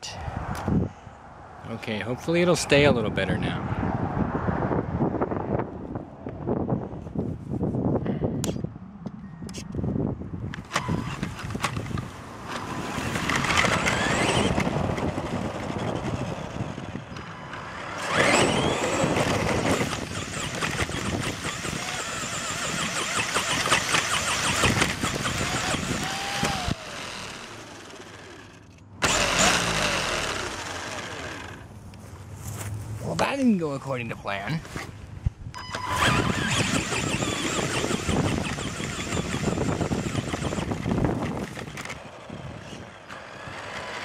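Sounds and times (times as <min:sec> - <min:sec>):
electric motor and gears whining: 0:10.5 - 0:31.8, 0:35.6 - 0:44.0
toy car rattling over ground: 0:10.6 - 0:16.9, 0:17.5 - 0:31.6, 0:35.6 - 0:44.0.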